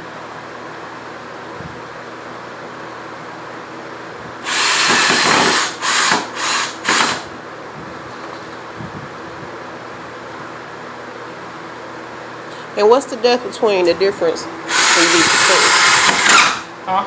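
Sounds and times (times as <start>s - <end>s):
power drill running: 4.4s - 7.3s, 14.7s - 16.7s.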